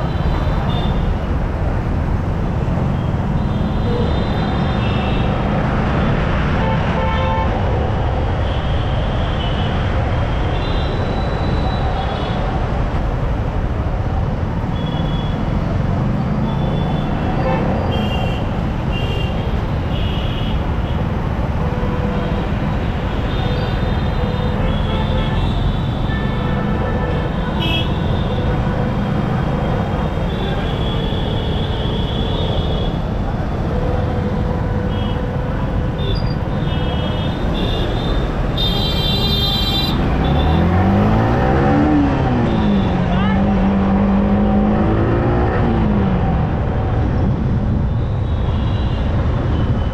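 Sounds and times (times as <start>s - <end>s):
surrounding traffic: 0.0s - 49.9s
vehicle horns honking: 21.7s - 40.6s.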